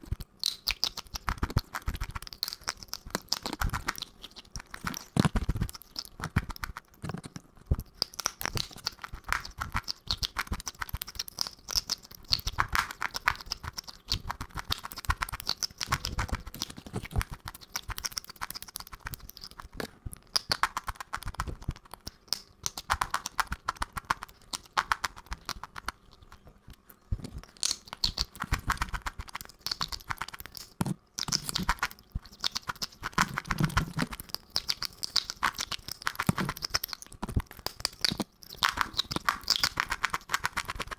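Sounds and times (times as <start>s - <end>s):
crunching and chewing food: 0.0s - 40.9s.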